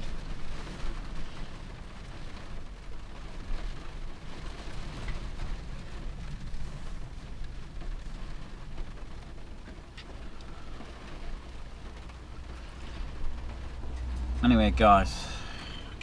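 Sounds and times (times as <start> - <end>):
rain on a vehicle roof: 0.0 - 16.0
low rumble: 10.2 - 16.0.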